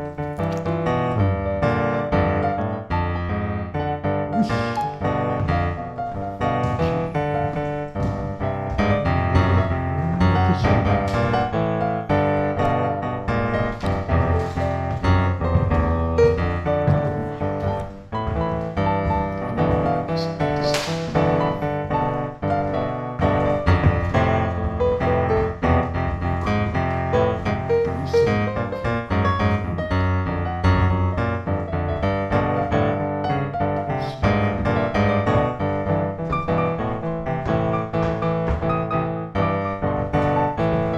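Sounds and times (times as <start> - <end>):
piano music: 0.0 - 40.9.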